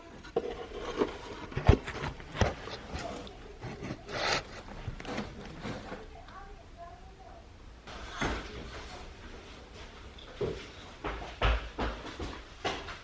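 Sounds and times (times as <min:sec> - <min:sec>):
short rasping scrape: 0:03.6 - 0:05.9.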